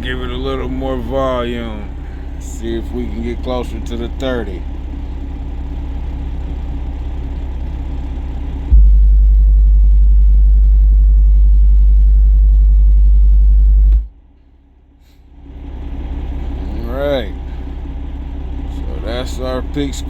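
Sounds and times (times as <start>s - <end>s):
low rumble: 0.0s - 20.0s
loud subwoofer test tone: 8.0s - 14.3s.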